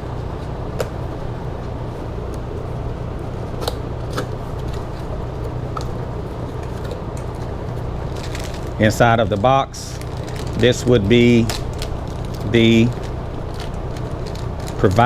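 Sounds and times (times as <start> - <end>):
steady background hum: 0.0 - 15.0
packaging clicks and handling: 8.1 - 15.0.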